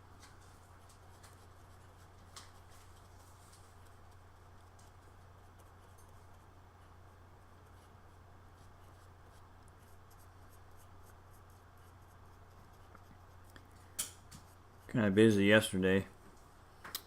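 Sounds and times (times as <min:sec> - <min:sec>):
steady low hum: 0:00.0 - 0:17.0
paintbrush scratchy strokes: 0:00.1 - 0:13.8.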